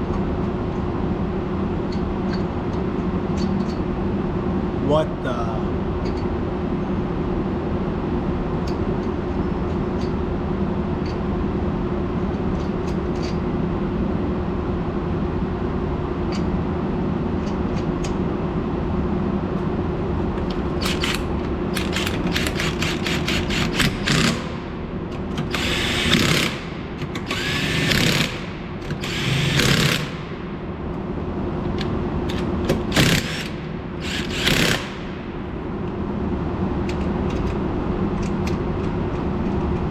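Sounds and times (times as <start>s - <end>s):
ventilation hum: 0.0s - 39.9s
cordless power tool running: 20.9s - 24.6s, 25.4s - 30.5s, 32.3s - 35.3s.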